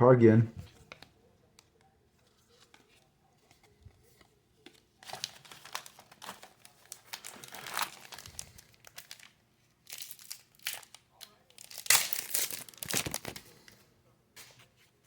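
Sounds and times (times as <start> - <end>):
wrapper crinkling and tearing: 4.7 - 13.7.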